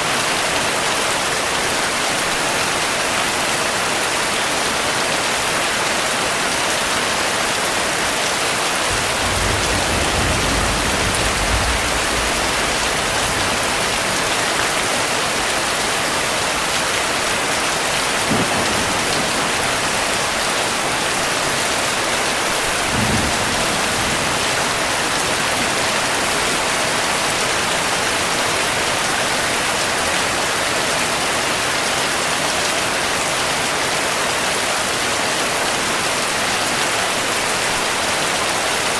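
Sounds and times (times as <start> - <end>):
heavy rain falling: 0.0 - 38.9
low rumble of thunder: 8.9 - 15.5, 18.2 - 20.5, 22.6 - 26.2.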